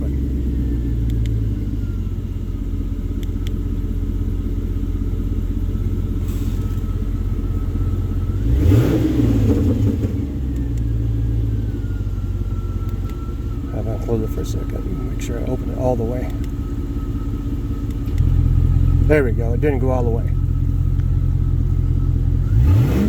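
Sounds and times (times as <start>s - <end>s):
car engine idling unmuffled: 0.0s - 23.0s
engine revving: 6.1s - 23.0s.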